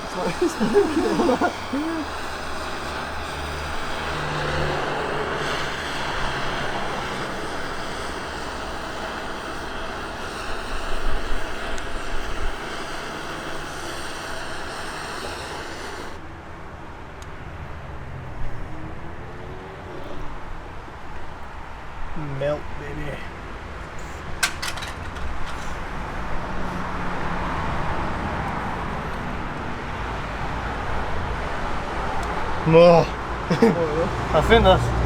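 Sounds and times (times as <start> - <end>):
gas torch hissing: 0.0 - 16.3, 27.8 - 35.0.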